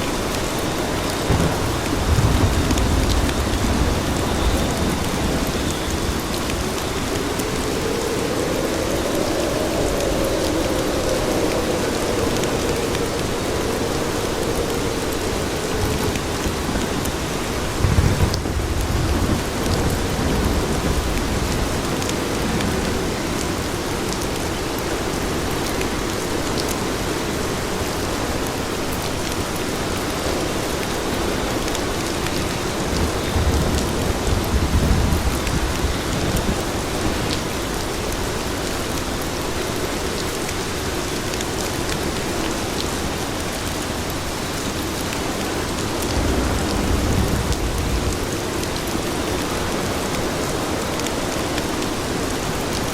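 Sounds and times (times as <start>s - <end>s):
rain on pavement: 0.0s - 52.9s
low rumble: 1.3s - 21.8s.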